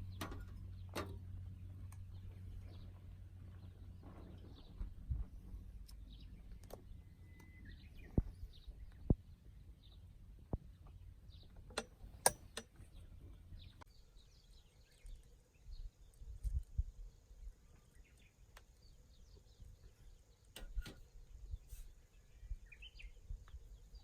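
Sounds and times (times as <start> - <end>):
faint bird chirps: 5.8 - 10.1, 12.4 - 24.0.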